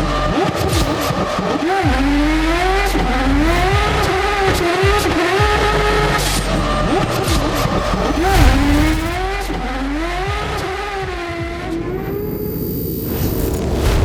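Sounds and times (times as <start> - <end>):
car engine at high revs: 2.9 - 9.6.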